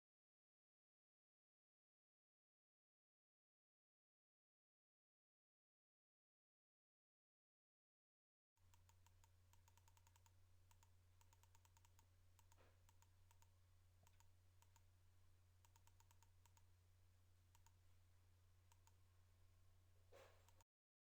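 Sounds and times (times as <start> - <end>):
faint irregular clicks: 8.6 - 15.0, 15.6 - 16.8, 17.4 - 17.9, 18.6 - 19.1, 20.1 - 20.6
steady low hum: 8.6 - 20.6.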